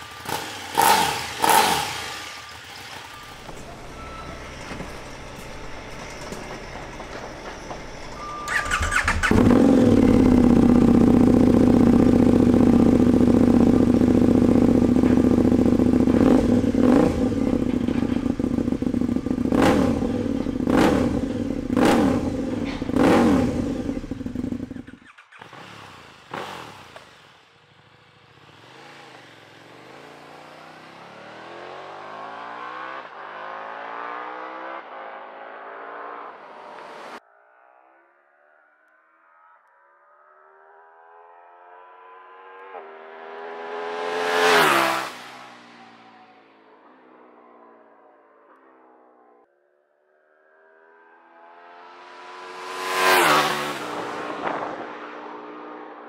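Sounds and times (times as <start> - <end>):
faint engine sound: 0.0 - 33.6
motorcycle engine idling loudly: 8.5 - 28.7.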